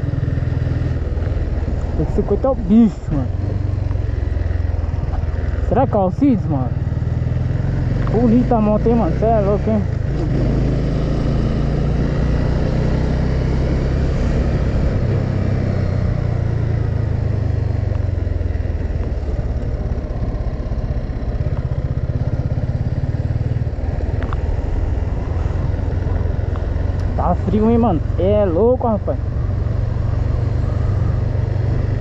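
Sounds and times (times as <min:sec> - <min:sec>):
motorcycle engine running: 0:00.0 - 0:32.0.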